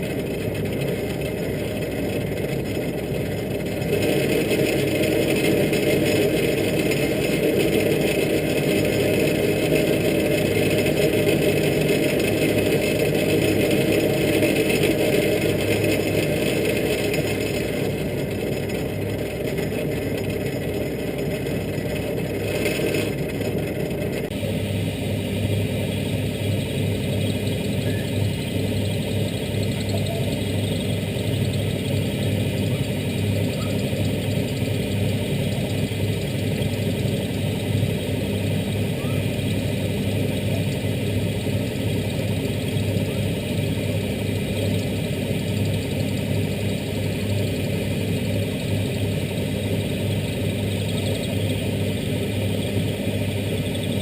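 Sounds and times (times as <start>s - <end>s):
lathe motor humming: 0.0s - 54.0s.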